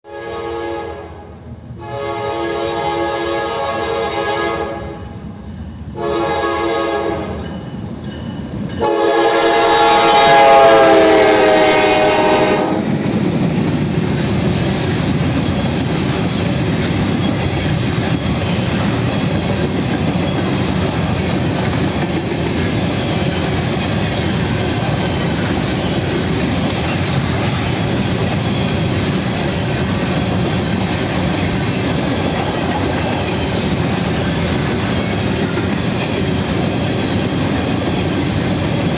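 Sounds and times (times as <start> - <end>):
locomotive horn blasts: 0.0 - 5.2, 6.0 - 7.4, 8.8 - 13.0
train rumble and clickety-clack: 4.2 - 38.9.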